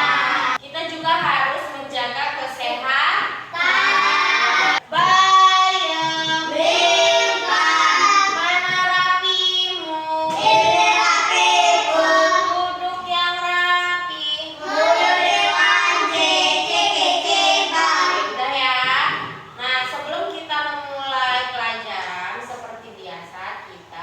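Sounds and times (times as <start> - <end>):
children singing: 0.0 - 0.6, 3.5 - 9.0, 10.1 - 12.8, 14.6 - 18.4.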